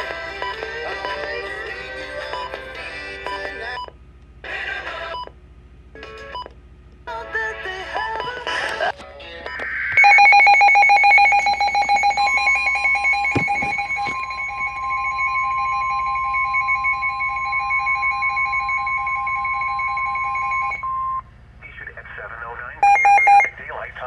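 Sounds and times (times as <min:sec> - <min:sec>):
pulsing two-tone alarm: 0:09.9 - 0:21.2, 0:22.8 - 0:23.5.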